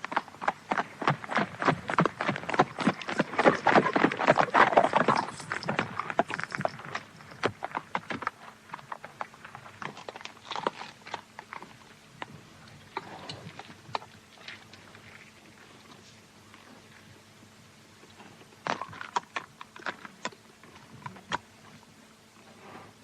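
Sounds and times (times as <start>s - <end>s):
horses' hooves clattering: 0.0s - 15.2s.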